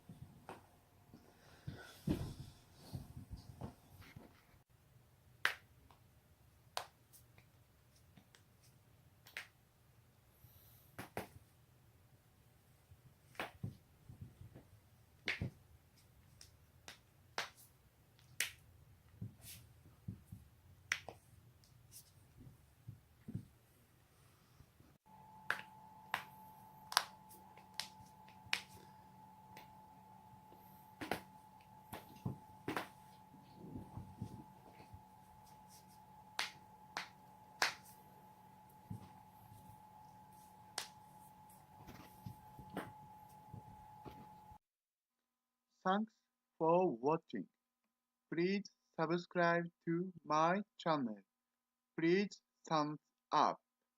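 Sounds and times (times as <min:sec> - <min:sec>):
faint steady hum: 0:22.6 - 0:44.6.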